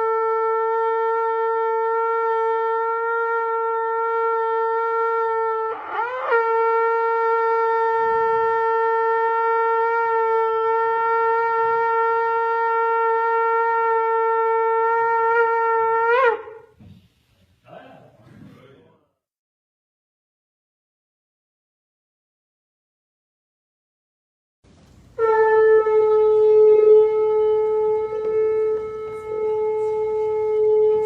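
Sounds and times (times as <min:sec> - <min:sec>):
shofar blowing long blasts: 0:00.0 - 0:16.8, 0:25.0 - 0:31.0.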